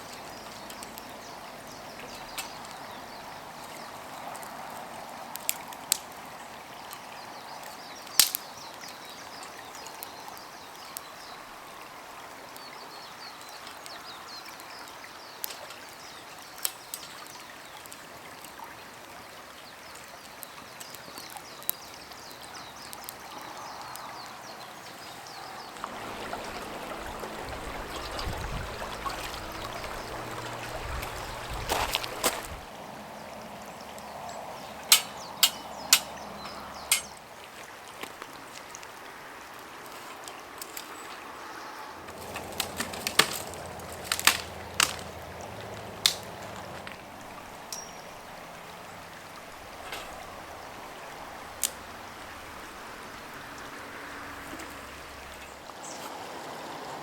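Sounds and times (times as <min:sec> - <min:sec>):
rushing water-like noise: 0:00.0 - 0:57.0
sharp clicks and knocks: 0:34.9 - 0:36.2, 0:42.1 - 0:45.1.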